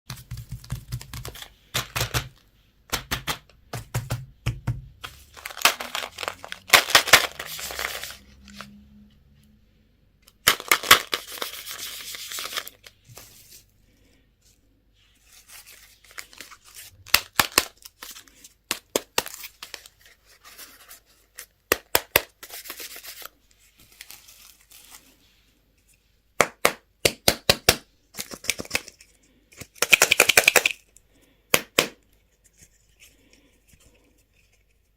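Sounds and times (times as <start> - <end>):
packaging tearing and crinkling: 5.3 - 8.2.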